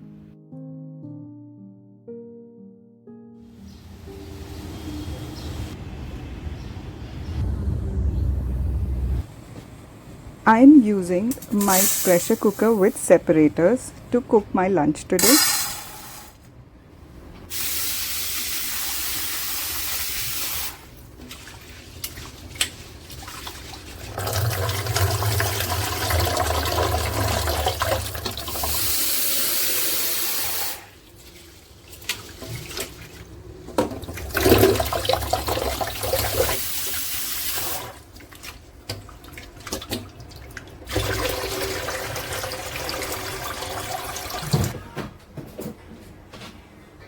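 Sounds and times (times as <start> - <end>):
kitchen tap running: 17.5 - 33.2, 33.8 - 44.7
water splashing into sink: 19.7 - 30.7, 31.3 - 44.7.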